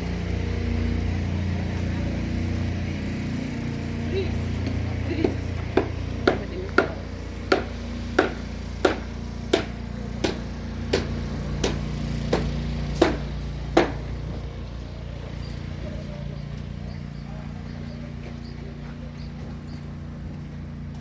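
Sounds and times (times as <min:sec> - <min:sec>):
hammer striking hard material: 0:05.7 - 0:14.0.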